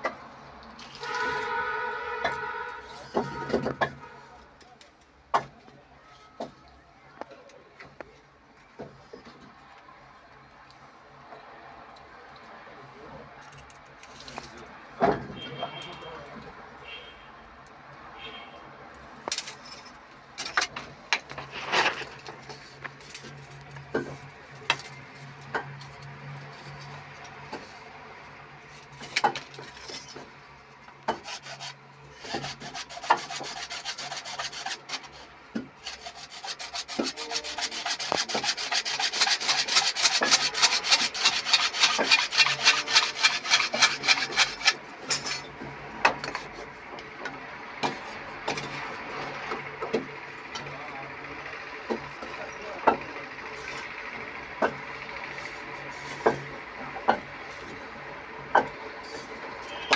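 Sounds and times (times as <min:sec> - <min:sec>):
knocks and clicks of repair work: 0:28.8 - 0:33.5, 0:37.9 - 0:50.7, 0:51.9 - 0:53.1, 0:54.6 - 0:54.9, 0:56.1 - 0:57.7, 0:58.4 - 0:59.2
fast back-and-forth rasping: 0:31.1 - 0:44.8.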